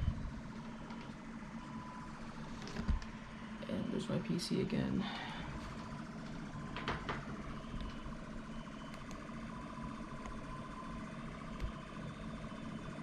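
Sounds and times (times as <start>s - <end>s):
siren-like electronic tones: 5.1s - 13.0s.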